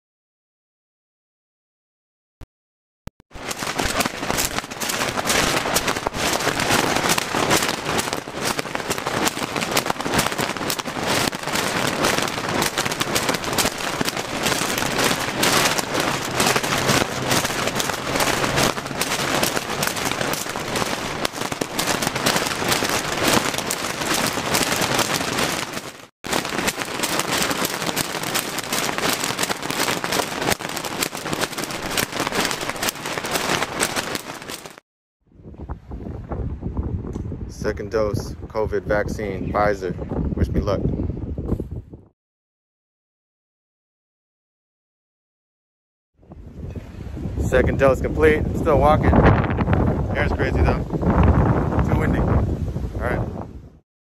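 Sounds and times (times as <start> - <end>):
rapid crackling and rattling: 3.3 - 34.8
strong wind buffeting: 3.4 - 34.3, 35.3 - 42.1, 46.2 - 53.8.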